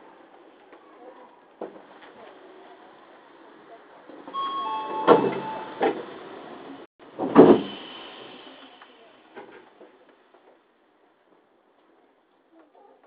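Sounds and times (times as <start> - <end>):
train door warning tones: 4.3 - 6.6
door closing thud: 5.1 - 6.1.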